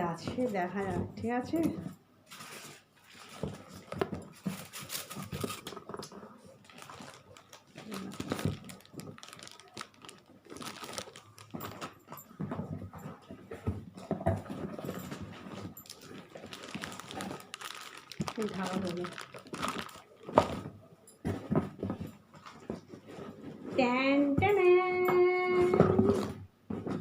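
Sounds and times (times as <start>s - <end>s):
packaging rustling: 2.3s - 12.4s, 14.4s - 20.8s.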